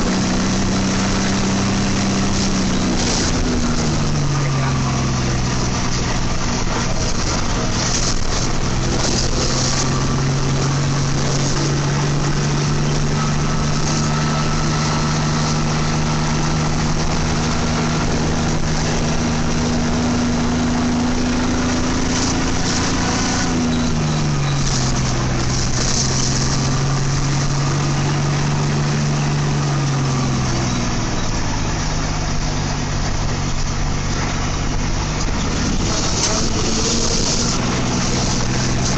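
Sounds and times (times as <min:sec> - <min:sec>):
bus engine running: 0:00.0 - 0:38.9.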